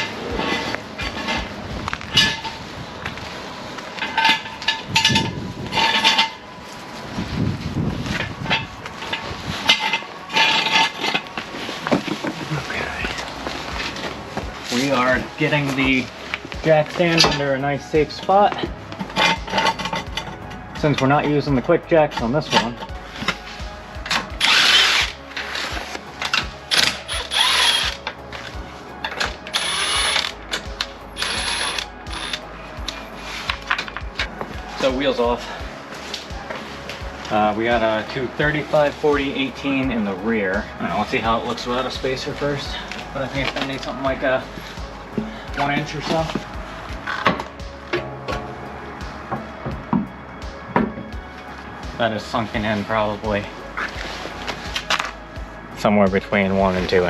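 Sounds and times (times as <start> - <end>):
impact wrench bursts: 24.4 - 25.2, 26.7 - 28.0, 29.5 - 30.3, 31.2 - 32.4
ratchet rasping clicks: 24.4 - 25.2, 26.7 - 28.0, 29.5 - 30.6, 31.2 - 32.4.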